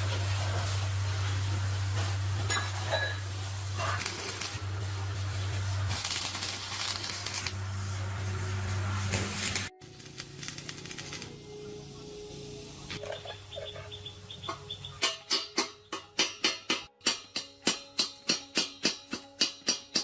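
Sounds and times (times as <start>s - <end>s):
hissing noise: 0.0s - 11.4s.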